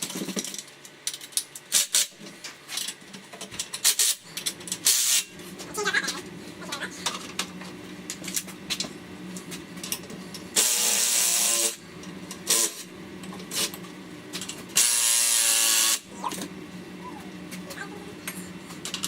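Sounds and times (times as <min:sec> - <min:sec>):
tools and parts clicking: 0:00.0 - 0:05.2.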